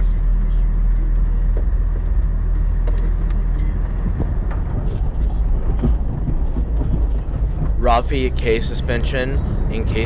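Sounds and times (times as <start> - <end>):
jeep engine running low revs: 0.0 - 10.0
body and suspension rattles: 1.4 - 10.0.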